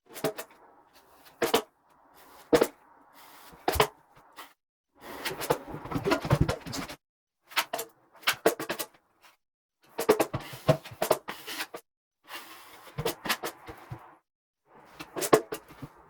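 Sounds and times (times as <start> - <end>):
metal knife scraping drywall: 7.6 - 13.6.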